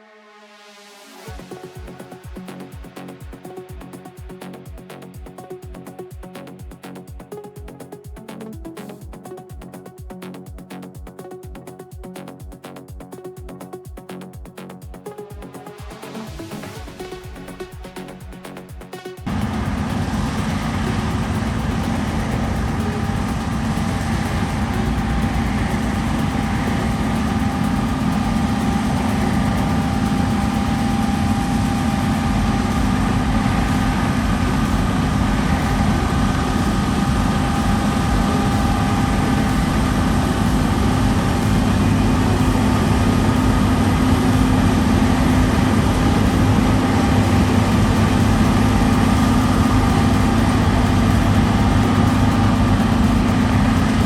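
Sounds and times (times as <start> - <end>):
diesel engine drone: 19.3 - 54.0
machinery whining tones: 19.3 - 54.0.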